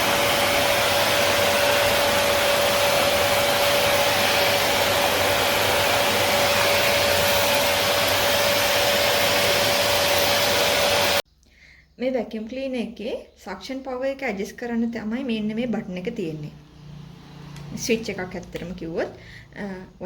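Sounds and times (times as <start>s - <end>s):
canister vacuum cleaner running: 0.0s - 11.2s.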